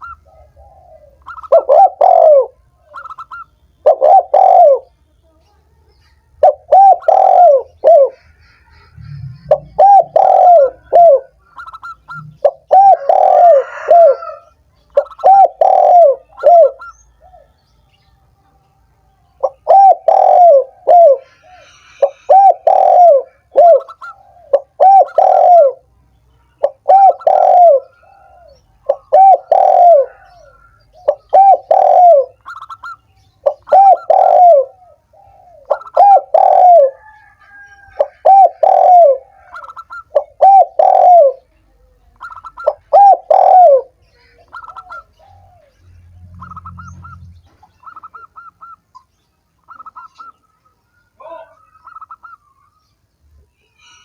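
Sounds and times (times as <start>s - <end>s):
dove cooing: 0.0s - 4.9s, 6.4s - 17.6s, 19.4s - 25.9s, 26.6s - 50.4s
short high bird notes: 9.0s - 11.3s.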